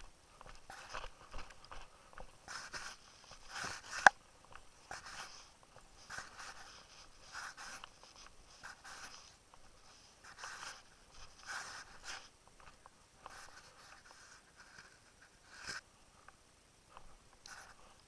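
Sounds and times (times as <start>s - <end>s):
footsteps crunching: 0.0s - 12.8s.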